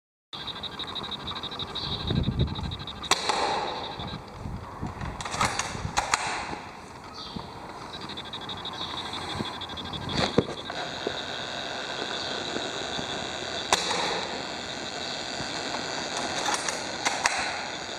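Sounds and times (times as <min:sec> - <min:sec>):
airsoft gun shots: 0:03.0 - 0:04.0, 0:05.2 - 0:06.7, 0:13.7 - 0:14.4, 0:16.2 - 0:17.7.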